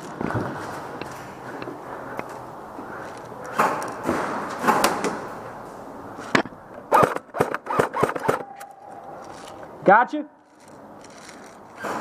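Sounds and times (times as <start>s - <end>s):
rapid airsoft gun shots: 6.9s - 8.8s.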